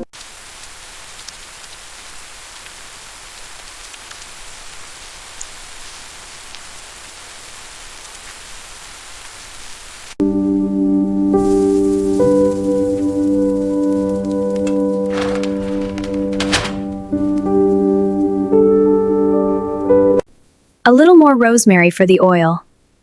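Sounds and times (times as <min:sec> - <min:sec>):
steady rain hiss: 0:00.2 - 0:10.2.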